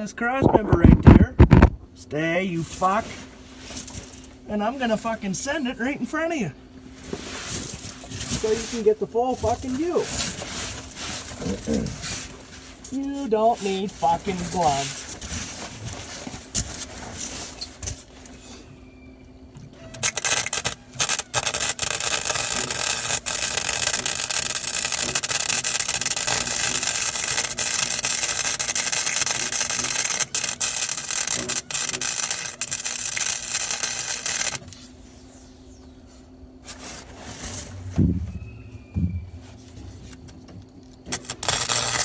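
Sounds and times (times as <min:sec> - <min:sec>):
welding arc crackling: 0:07.7 - 0:15.5, 0:19.8 - 0:36.0, 0:41.1 - 0:42.0.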